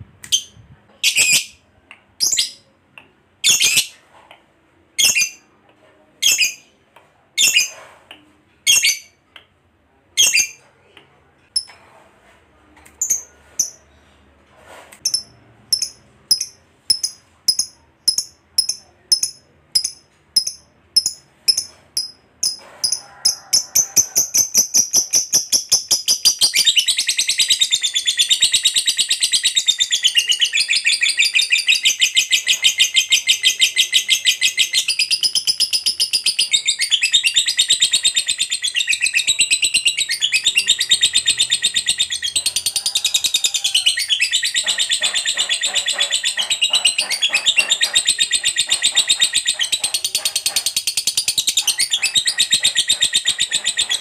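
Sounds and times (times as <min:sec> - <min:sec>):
lovebird calling and chattering: 0:00.3 - 0:01.6, 0:02.2 - 0:02.6, 0:03.4 - 0:03.9, 0:15.0 - 0:54.0.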